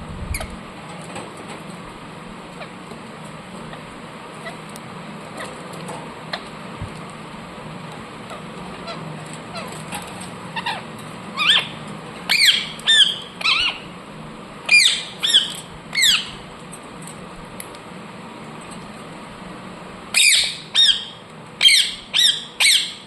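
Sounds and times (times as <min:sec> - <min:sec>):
parakeet harsh calls: 0:03.7 - 0:04.6, 0:08.2 - 0:13.9, 0:14.7 - 0:16.4, 0:20.1 - 0:23.0.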